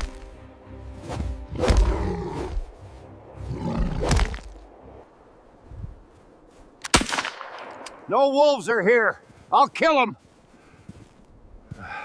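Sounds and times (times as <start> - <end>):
dramatic background music: 0.0 - 5.1
animal roars and snarls: 1.5 - 2.8, 3.4 - 4.6.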